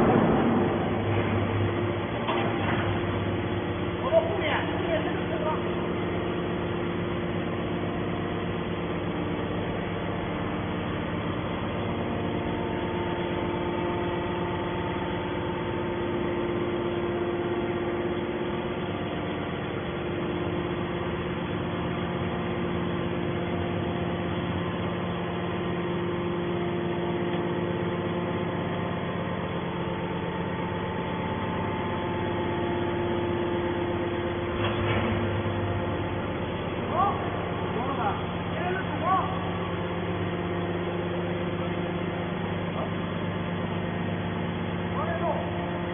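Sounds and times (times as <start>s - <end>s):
baler machine hum: 0.0s - 45.9s.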